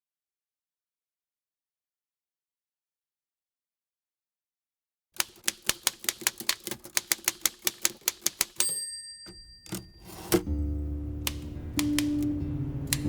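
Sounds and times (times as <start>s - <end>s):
heavy typewriter clunks: 5.2s - 10.5s
manual typewriter keystrokes: 5.2s - 10.5s, 11.2s - 13.0s
typewriter margin bell ding: 5.4s - 10.5s.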